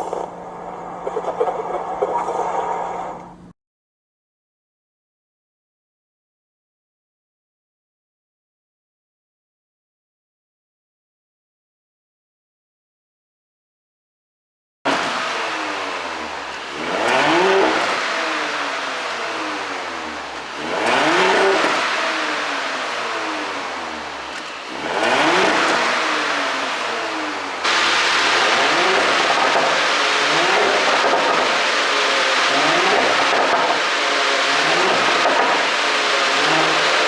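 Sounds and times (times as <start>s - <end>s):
car engine revving with exhaust pops: 0.0s - 3.5s, 14.9s - 37.0s.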